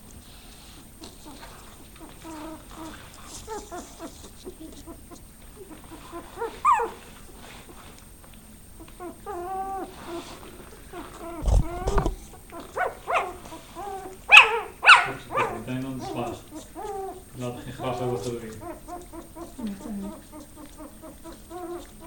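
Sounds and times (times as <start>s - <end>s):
puppies whimpering and whining: 0.7s - 8.0s, 8.6s - 22.0s
puppy yelp: 2.0s - 7.1s, 10.9s - 17.2s, 17.8s - 22.0s
loud low thumps: 11.4s - 12.3s.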